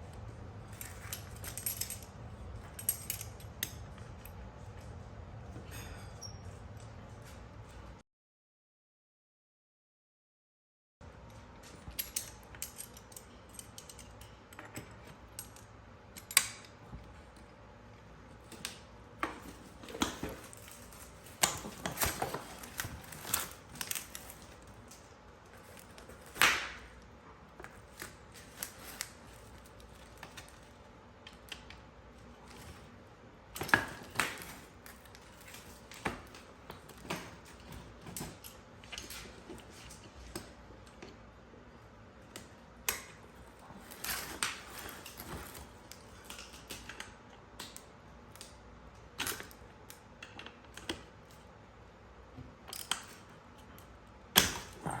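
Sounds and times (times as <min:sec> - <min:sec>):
metal parts and tools clinking: 0:00.7 - 0:03.8, 0:11.8 - 0:14.7.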